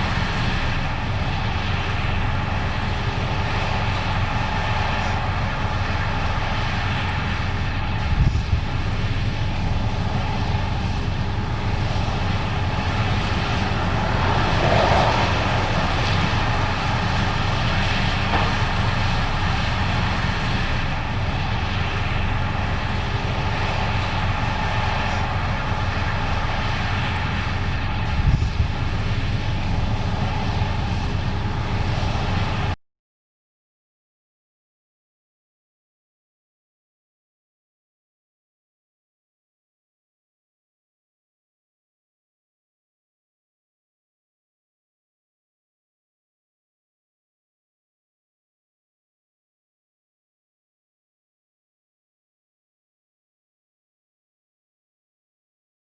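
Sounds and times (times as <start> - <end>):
combine harvester engine drone: 0.0 - 32.8.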